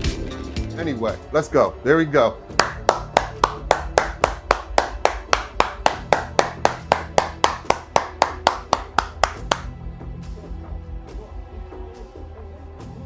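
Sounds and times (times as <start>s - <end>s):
person clapping hands: 2.6s - 9.7s.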